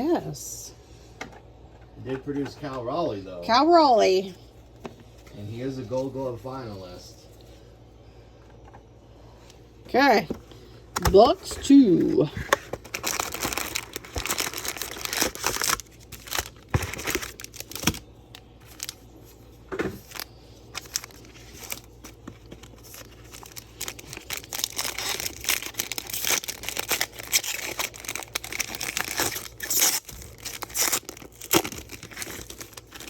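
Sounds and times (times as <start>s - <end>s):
packaging crinkling and tearing: 11.4s - 33.0s.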